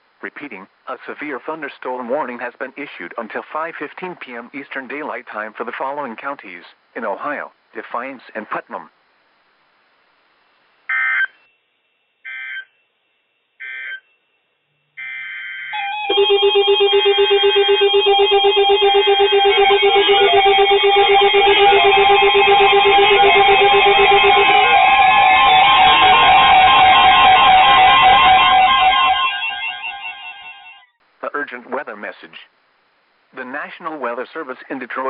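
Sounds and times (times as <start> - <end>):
beeping and warbling alarm tones: 15.0 - 30.9
screeching data bursts: 15.8 - 30.0.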